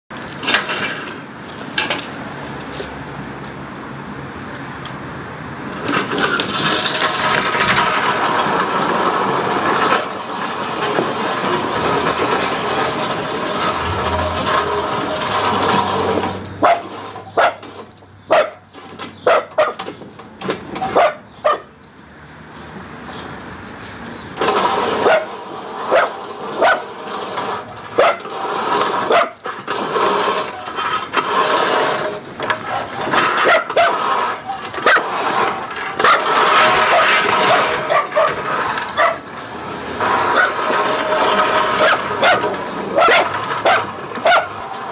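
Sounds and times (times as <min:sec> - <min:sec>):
lawnmower running: 0:06.4 - 0:18.0, 0:24.4 - 0:44.9
dog barking: 0:16.6 - 0:17.6, 0:18.3 - 0:18.6, 0:19.2 - 0:19.8, 0:21.0 - 0:21.7, 0:25.9 - 0:26.8, 0:29.1 - 0:29.4, 0:36.9 - 0:38.4, 0:39.0 - 0:39.2, 0:41.8 - 0:42.4, 0:43.0 - 0:44.5.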